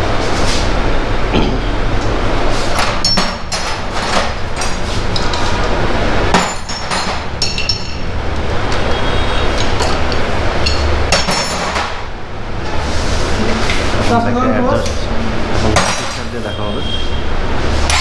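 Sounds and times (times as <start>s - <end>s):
metal tools clinking: 6.4s - 8.0s.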